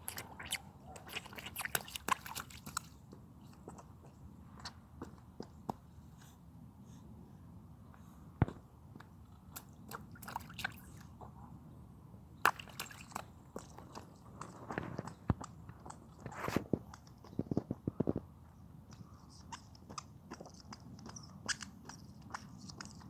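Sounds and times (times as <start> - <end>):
squeaky shoes squishing: 0.0 - 3.9, 19.3 - 23.0.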